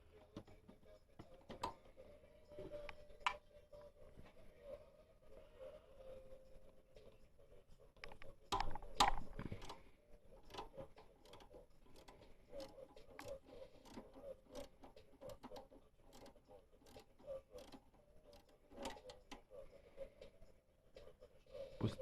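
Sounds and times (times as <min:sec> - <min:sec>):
wrench metal clicks: 0:10.4 - 0:19.5.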